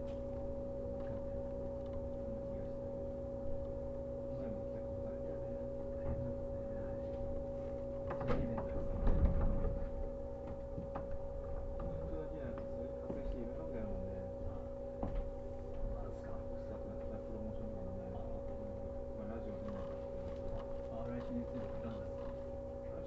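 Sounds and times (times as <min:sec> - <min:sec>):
electric train hum: 0:00.0 - 0:23.0
low train rumble: 0:11.2 - 0:19.6.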